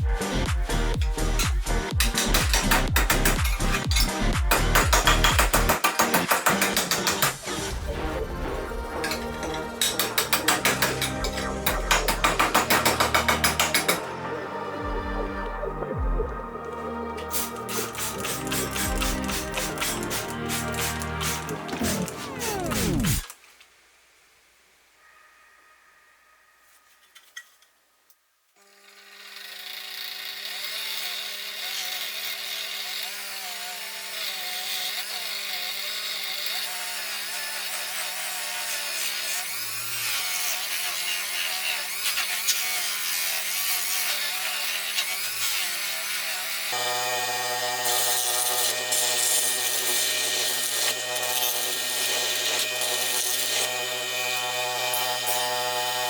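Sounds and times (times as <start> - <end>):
polishing tool motor hum: 8.6 - 23.2, 28.6 - 56.0.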